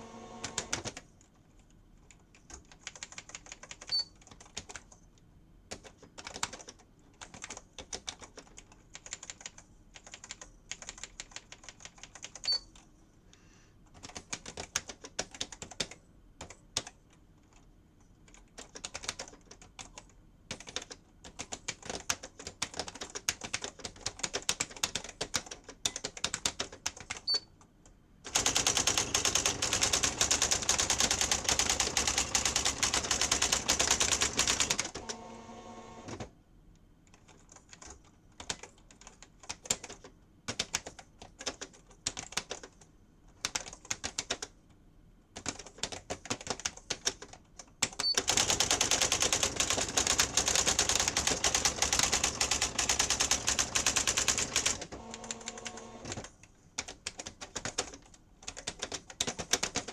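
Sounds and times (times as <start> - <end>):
daisy wheel printing clatter: 28.3 - 34.8, 48.2 - 54.8
typewriter key clicks: 47.8 - 54.8.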